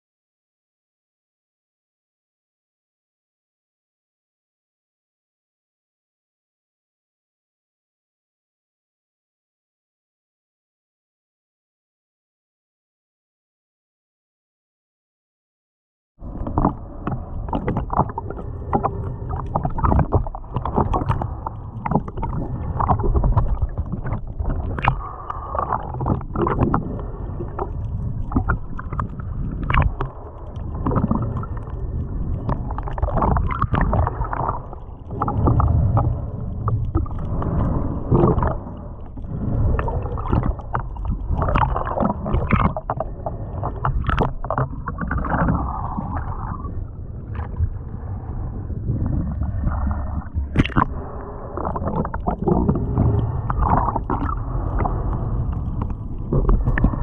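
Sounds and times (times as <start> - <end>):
muffled water sloshing: 16.2 - 57.0.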